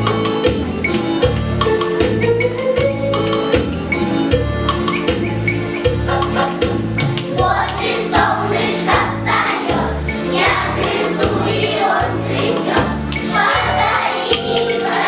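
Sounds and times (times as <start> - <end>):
group singing song with beat: 6.0 - 15.0.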